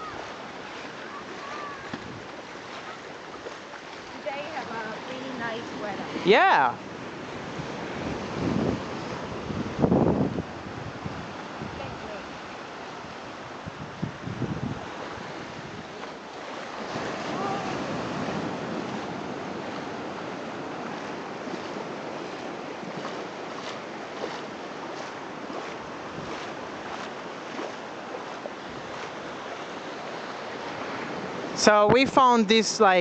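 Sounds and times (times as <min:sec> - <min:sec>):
waves breaking on beach: 0:00.0 - 0:33.0.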